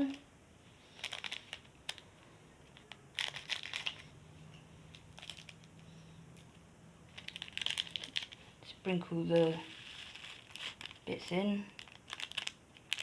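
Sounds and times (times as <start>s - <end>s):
plastic packet crinkling: 0.8s - 4.1s, 4.9s - 5.8s, 7.1s - 13.0s.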